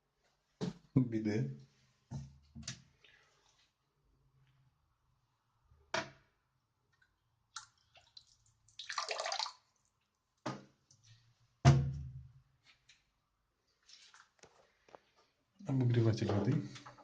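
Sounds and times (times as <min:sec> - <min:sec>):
water rushing from tap: 0:08.2 - 0:09.5.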